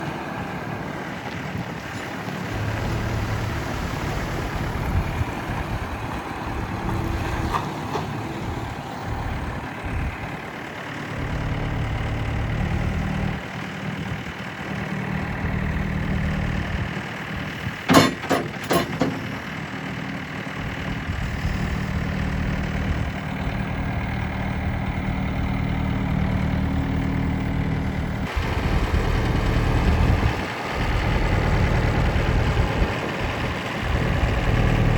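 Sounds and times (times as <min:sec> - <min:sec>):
diesel engine revving: 0:00.0 - 0:34.9
sharp knocks: 0:17.9 - 0:19.4.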